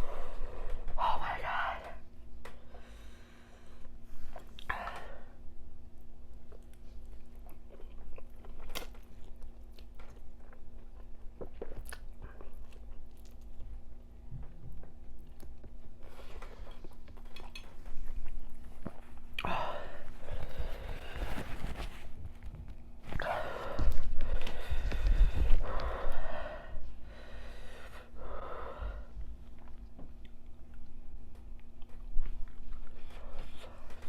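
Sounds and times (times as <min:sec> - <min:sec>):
faint steady hum: 0:00.0 - 0:34.0
chewing noodles: 0:06.5 - 0:13.7.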